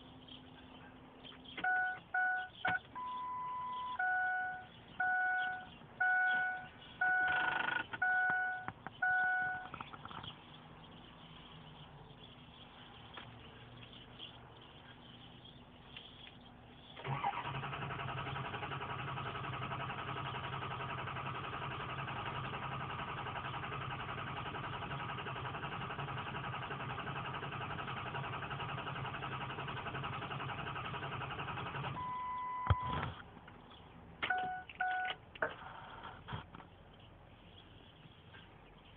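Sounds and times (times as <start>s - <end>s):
diesel engine starter cranking: 1.5s - 10.1s, 16.8s - 33.7s, 34.6s - 36.6s
short electronic beeps: 1.6s - 9.8s, 32.0s - 33.0s, 34.2s - 35.2s.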